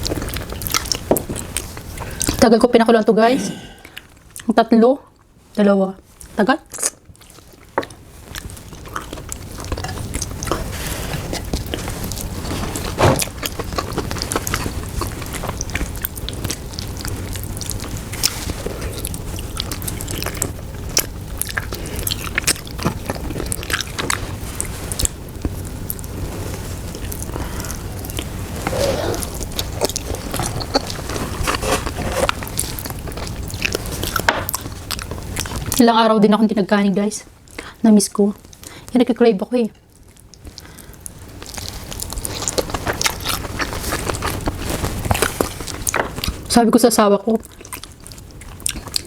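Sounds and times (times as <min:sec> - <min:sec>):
chewing and mouth smacks: 0:00.0 - 0:02.4, 0:11.3 - 0:28.4, 0:29.4 - 0:35.8, 0:39.9 - 0:46.5, 0:47.4 - 0:49.0
low steady hum: 0:00.0 - 0:49.0.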